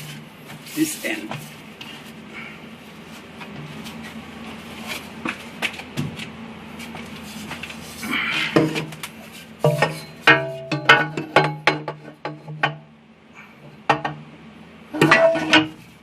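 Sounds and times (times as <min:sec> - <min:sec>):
metal parts and tools knocking: 0:09.6 - 0:12.8, 0:13.9 - 0:14.2, 0:15.0 - 0:15.8
metal clatter: 0:15.0 - 0:15.9.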